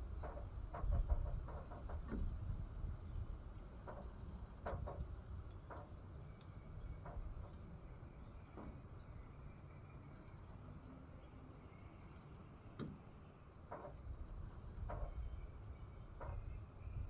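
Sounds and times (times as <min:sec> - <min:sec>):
faint small clicks: 0:03.1 - 0:07.7, 0:10.1 - 0:11.0, 0:12.0 - 0:13.0.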